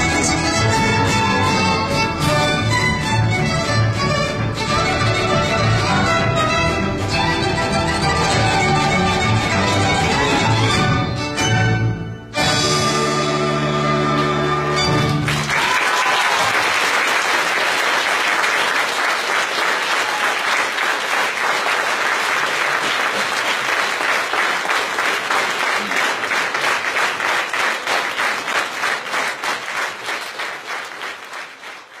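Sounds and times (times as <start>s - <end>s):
audience applauding: 14.6s - 32.0s.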